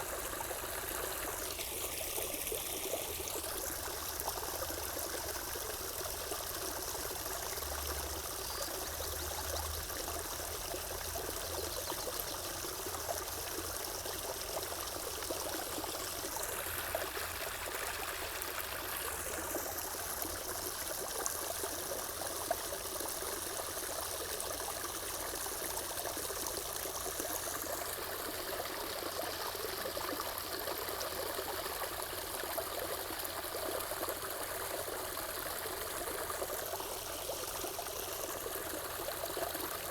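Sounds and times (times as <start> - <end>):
water running and trickling: 0.0 - 39.9.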